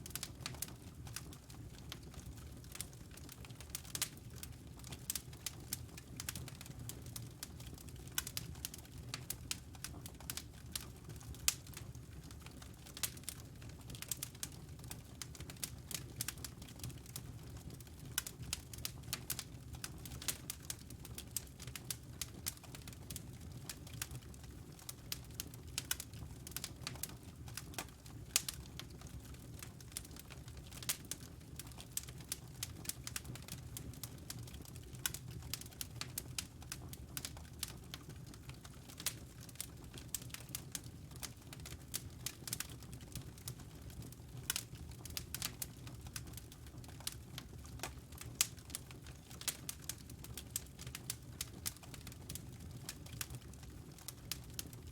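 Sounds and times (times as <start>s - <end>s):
fire crackling and popping: 0.0s - 54.9s
low rumble of fire: 0.0s - 54.9s.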